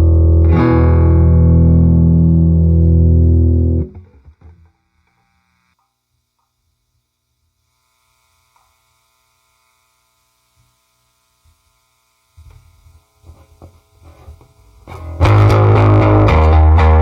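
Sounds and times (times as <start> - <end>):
electric bass guitar playing: 0.0 - 4.5, 14.9 - 17.0.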